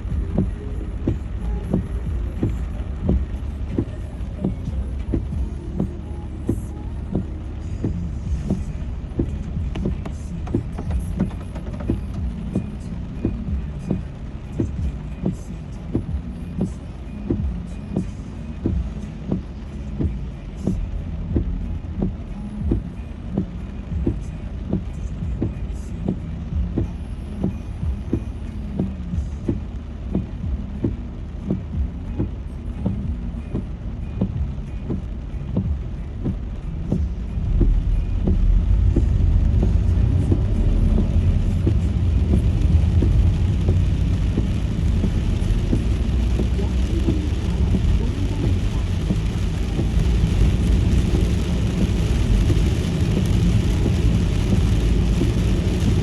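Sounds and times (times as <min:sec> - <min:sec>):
engine and road rumble: 0:00.0 - 0:56.0.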